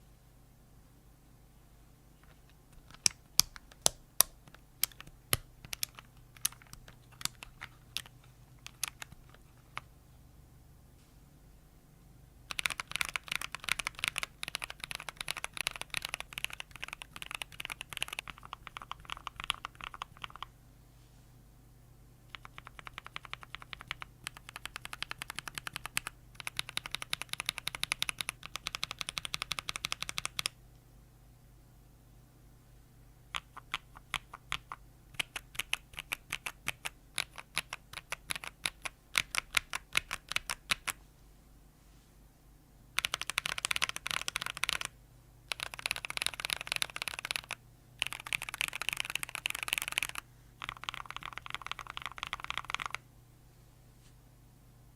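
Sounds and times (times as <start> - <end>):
mechanical keyboard typing: 2.2 - 9.9, 12.5 - 20.5, 22.3 - 30.6, 33.3 - 41.0, 43.0 - 53.0.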